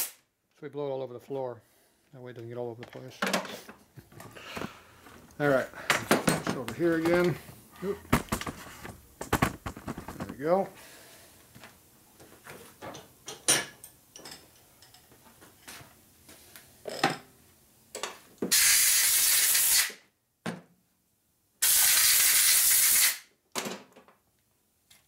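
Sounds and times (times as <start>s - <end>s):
compressed air blow gun blasts: 0.0s - 0.2s, 21.6s - 23.2s.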